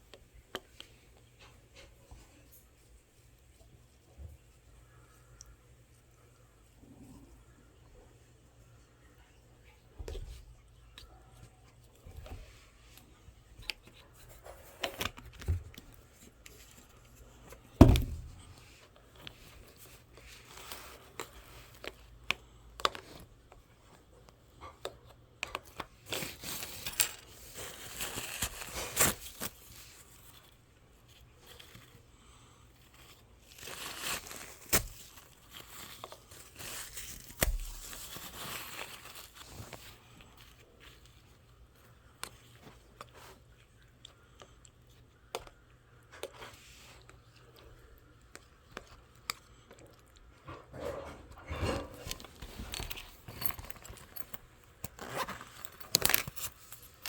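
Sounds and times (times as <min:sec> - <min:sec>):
paper or plastic rustling: 0:25.9 - 0:32.0, 0:33.0 - 0:41.2.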